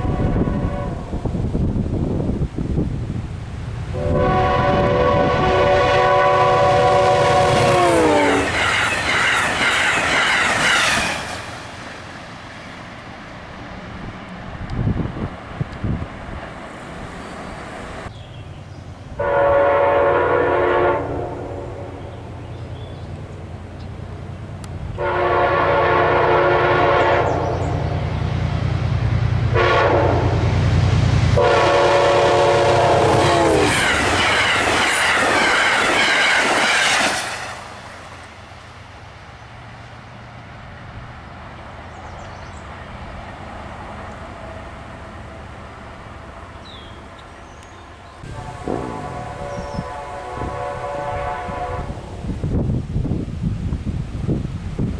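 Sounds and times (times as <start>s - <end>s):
train air horn blasts: 0.0s - 1.5s, 3.9s - 8.6s, 19.1s - 22.2s, 24.9s - 28.0s, 29.5s - 35.1s, 48.2s - 52.3s
rush of passing train cars: 0.0s - 54.9s
train rumble: 0.0s - 54.9s.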